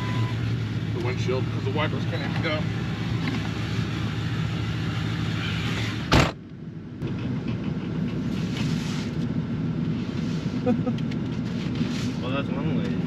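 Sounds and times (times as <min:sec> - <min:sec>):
diesel engine idling: 0:00.0 - 0:11.6
loud sharp thump: 0:06.1 - 0:06.4.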